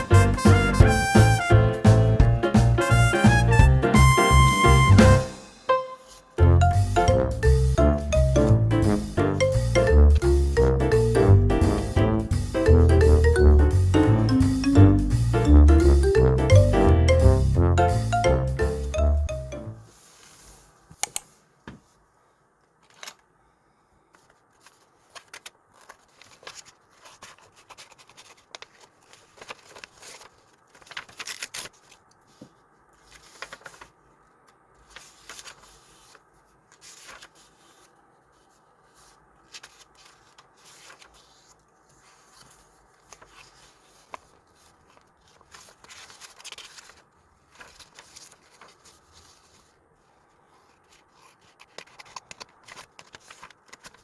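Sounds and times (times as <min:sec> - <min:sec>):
paper rustling: 0:06.0 - 0:06.4, 0:19.7 - 0:22.0, 0:22.8 - 0:23.2, 0:24.1 - 0:54.0.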